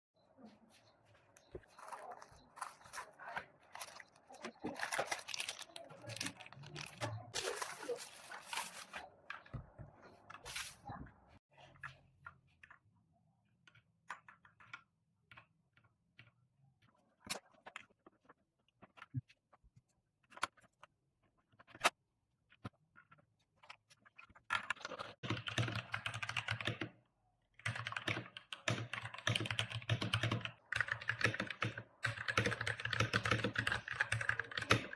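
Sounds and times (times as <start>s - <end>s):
mechanical keyboard typing: 24.5s - 26.9s, 27.6s - 34.9s.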